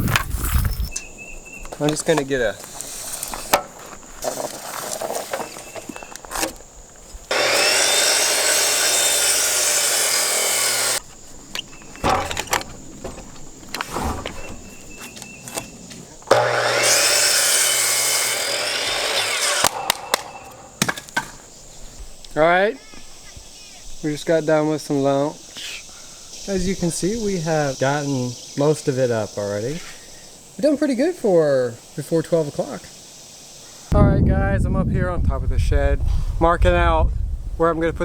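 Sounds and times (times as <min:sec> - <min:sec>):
knocks and handling clatter: 0:01.6 - 0:07.2, 0:11.0 - 0:16.4
power saw cutting wood: 0:07.3 - 0:11.0, 0:16.2 - 0:21.0.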